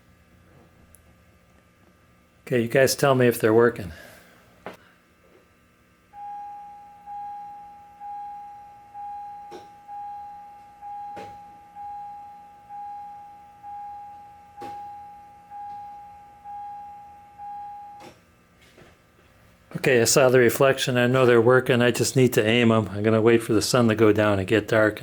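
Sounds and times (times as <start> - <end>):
car warning chime dinging: 6.2 - 18.1.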